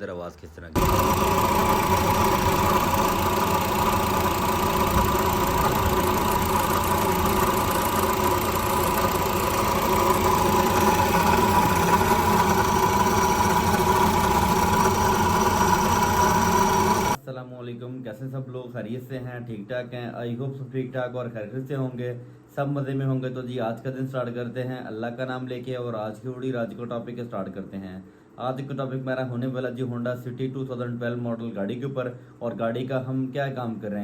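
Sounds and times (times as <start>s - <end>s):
car engine idling with mechanical noise: 0.8s - 17.2s.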